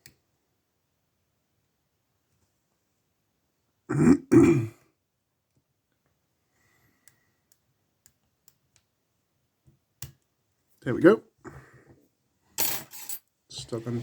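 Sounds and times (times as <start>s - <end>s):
person clearing throat: 3.9s - 4.9s.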